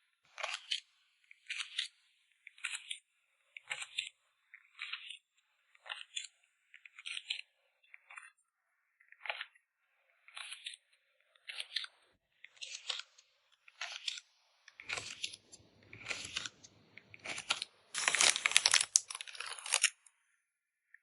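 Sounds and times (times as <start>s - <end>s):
packing materials crinkling: 17.2s - 20.0s.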